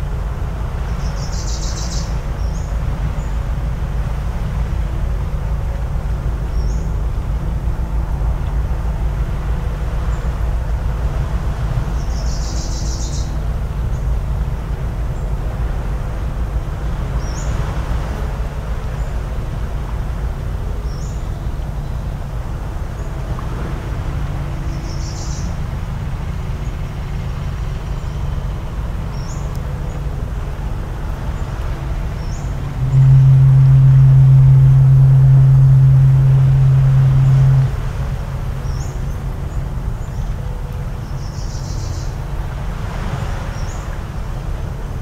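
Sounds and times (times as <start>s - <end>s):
faint motor hum: 0.0s - 45.0s
low rumble: 13.3s - 40.0s.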